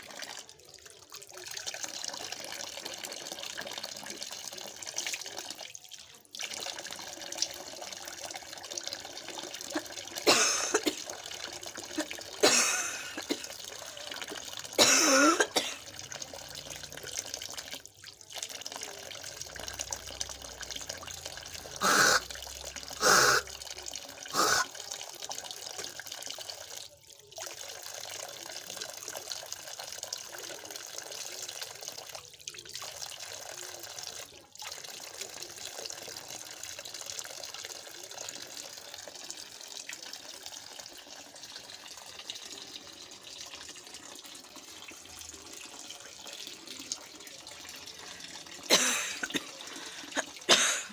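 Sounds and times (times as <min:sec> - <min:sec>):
person coughing: 0:09.7 - 0:11.1, 0:12.0 - 0:13.6, 0:14.8 - 0:15.8, 0:21.8 - 0:22.2, 0:23.0 - 0:23.5, 0:24.4 - 0:24.7, 0:48.7 - 0:50.9.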